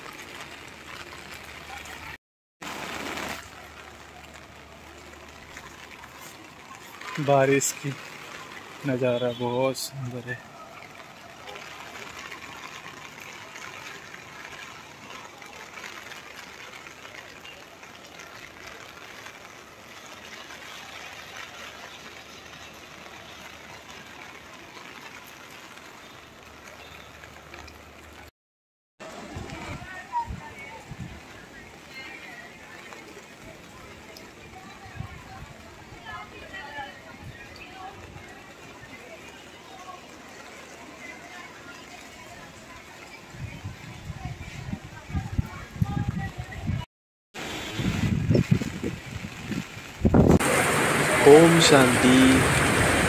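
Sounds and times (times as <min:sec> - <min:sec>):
running water: 0:00.0 - 0:28.3, 0:29.0 - 0:53.0
steady rain falling: 0:00.0 - 0:28.3, 0:29.0 - 0:53.0
loud rush of noise: 0:50.0 - 0:53.0.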